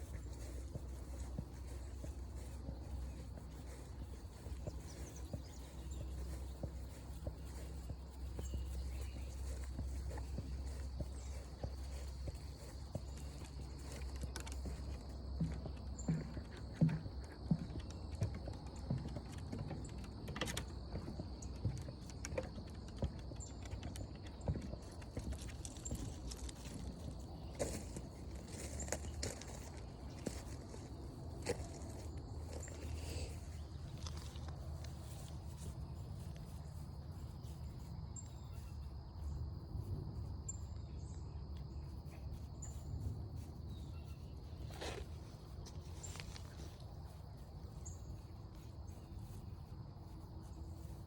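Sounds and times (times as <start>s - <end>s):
footsteps walking: 0.0s - 51.0s.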